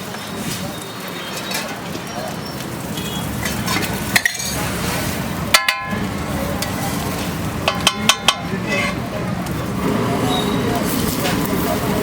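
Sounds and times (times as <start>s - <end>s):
steady background noise: 0.0s - 12.0s
metal utensils clinking on cookware: 0.2s - 9.0s.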